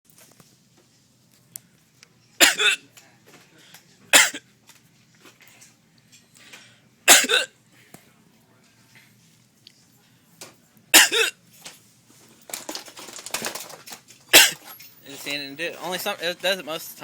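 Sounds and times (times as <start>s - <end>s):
man coughing with hiccups: 2.4s - 2.9s, 4.1s - 4.4s, 7.1s - 7.6s, 10.9s - 11.4s, 14.3s - 14.7s.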